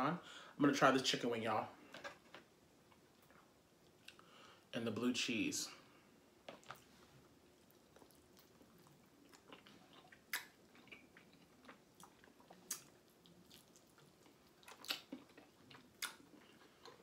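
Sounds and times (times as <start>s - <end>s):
person chewing: 6.4s - 17.0s.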